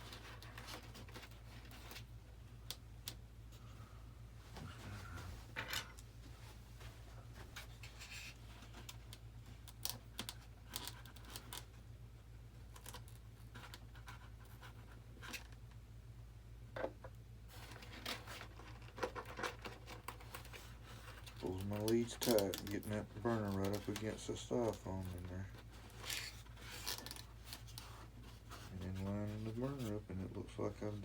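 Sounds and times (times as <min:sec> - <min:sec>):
steady low hum: 0:00.0 - 0:31.0
hands scratching and rustling: 0:17.5 - 0:31.0.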